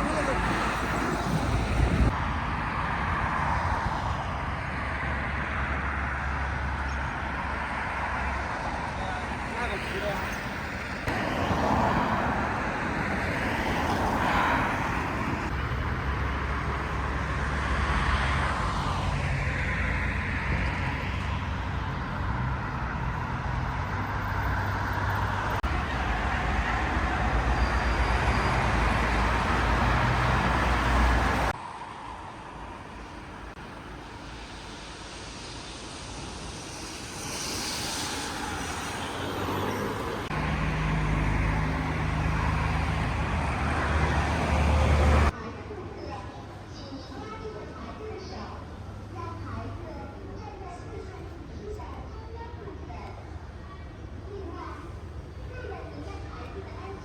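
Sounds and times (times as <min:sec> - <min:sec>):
gliding whines: 0:00.0 - 0:02.1, 0:33.1 - 0:43.2
vehicles passing: 0:00.0 - 0:46.7.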